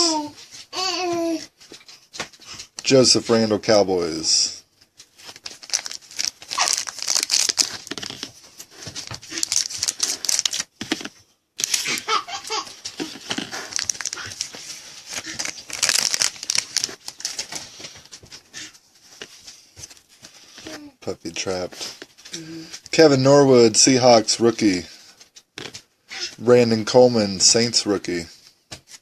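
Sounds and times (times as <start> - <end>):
foil wrapper crinkling and tearing: 5.2 - 11.0, 11.6 - 17.9.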